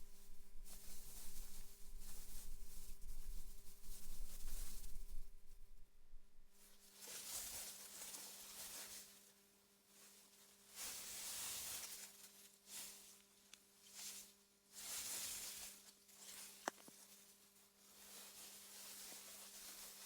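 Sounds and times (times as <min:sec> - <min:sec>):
wind through grass: 0:00.0 - 0:06.7
low steady hum: 0:00.0 - 0:06.8.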